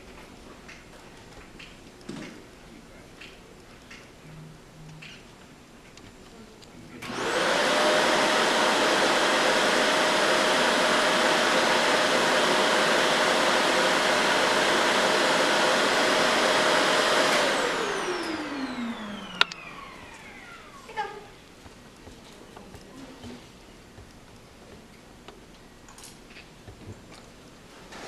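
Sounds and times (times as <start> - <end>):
appliance motor whine: 7.0 - 22.2.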